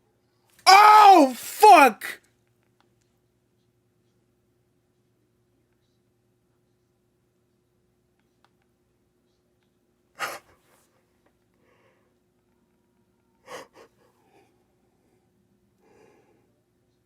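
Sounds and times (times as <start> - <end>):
soft breathing: 10.2 - 12.2, 13.4 - 16.6.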